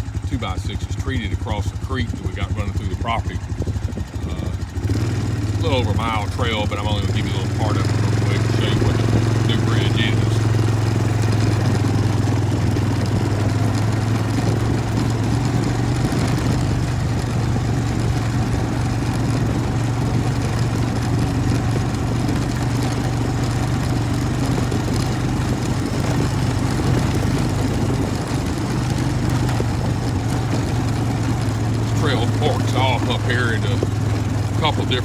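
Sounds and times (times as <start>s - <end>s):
vehicle engine running steadily: 0.0s - 35.0s.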